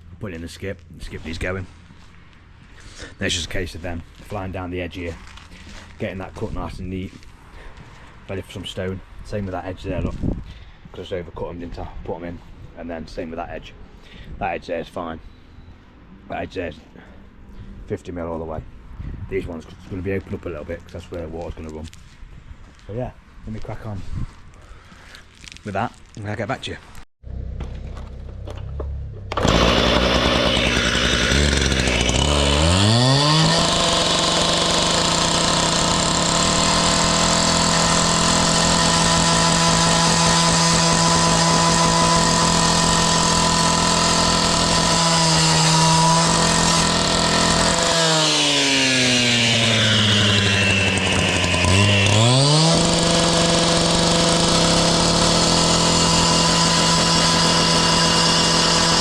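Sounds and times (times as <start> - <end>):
two-stroke saw revving: 27.3 - 59.0.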